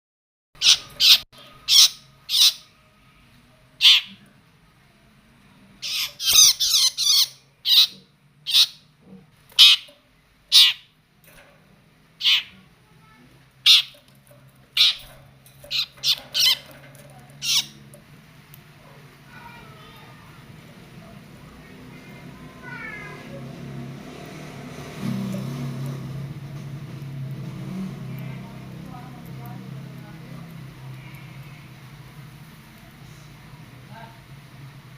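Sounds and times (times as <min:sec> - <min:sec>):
bird giving harsh calls: 0:00.6 - 0:02.7, 0:03.8 - 0:04.2, 0:05.8 - 0:08.9, 0:09.6 - 0:09.9, 0:10.5 - 0:10.9, 0:12.2 - 0:12.6, 0:13.6 - 0:14.0, 0:14.8 - 0:15.1, 0:15.7 - 0:16.7, 0:17.4 - 0:17.8.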